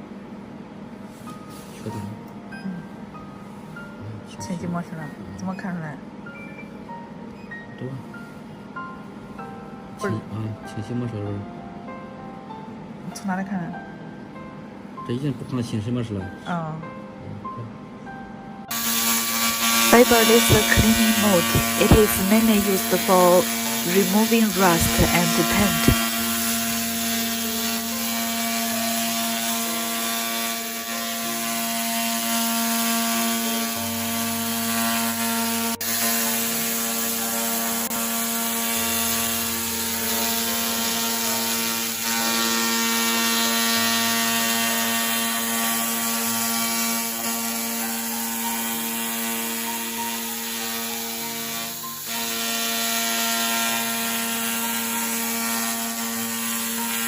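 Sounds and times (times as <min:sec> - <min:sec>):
laser cleaning head buzzing: 0:18.7 - 0:57.0.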